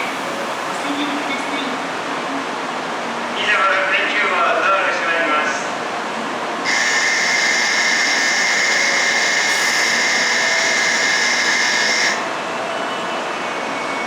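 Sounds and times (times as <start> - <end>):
electronic departure bell ringing: 6.7 - 12.3.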